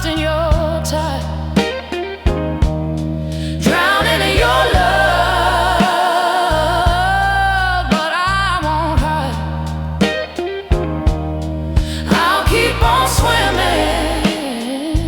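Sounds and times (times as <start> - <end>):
bass: 0.0 - 15.0
drum beat: 12.1 - 13.6.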